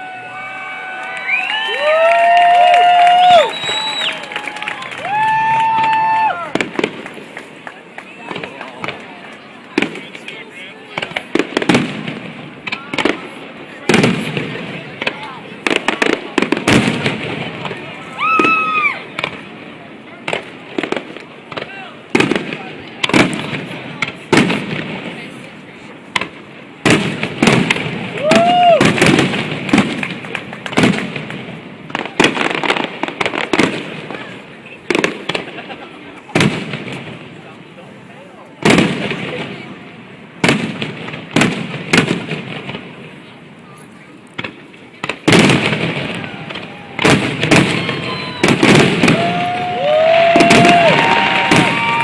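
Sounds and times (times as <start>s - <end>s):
fireworks whistling: 0.0s - 9.0s, 44.4s - 52.0s
whistle-like tone: 3.4s - 4.2s
fireworks bangs with echo: 5.1s - 52.0s.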